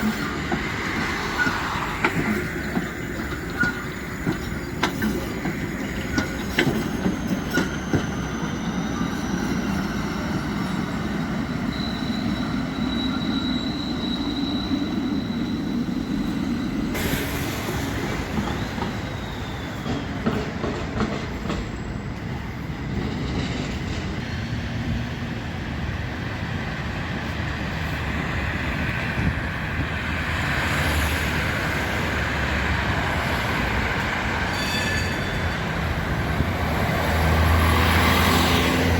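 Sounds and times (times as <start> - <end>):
high wheel squeal: 0.0 - 22.9, 30.4 - 38.9
tram wheels clicking over rail joints: 0.0 - 27.4.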